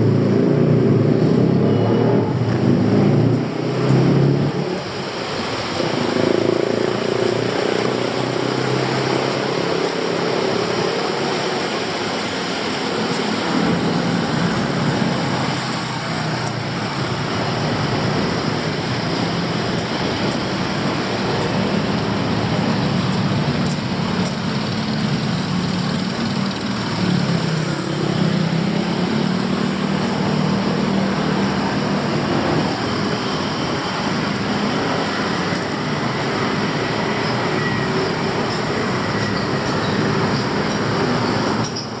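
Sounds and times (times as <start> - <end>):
passing traffic: 0.0 - 42.0.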